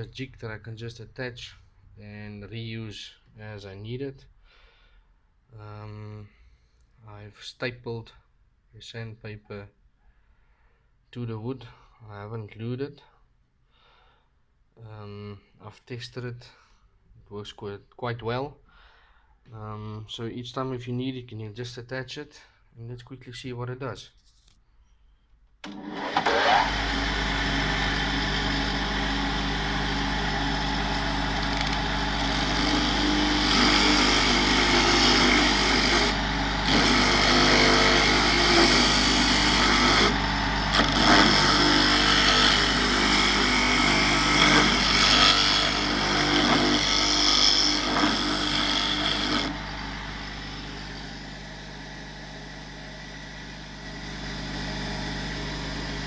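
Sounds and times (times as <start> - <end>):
drum sander motor hum: 25.7 - 56.0
wood sanding noise: 26.3 - 51.3.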